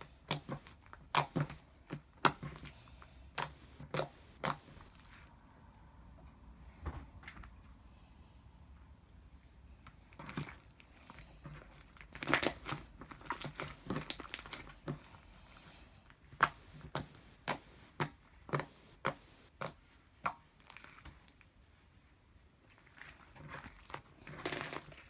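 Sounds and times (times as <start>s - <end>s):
slime squelching and crackling: 0.0s - 5.4s, 9.8s - 21.6s, 22.7s - 25.0s
sharp slime pops: 3.3s - 4.8s.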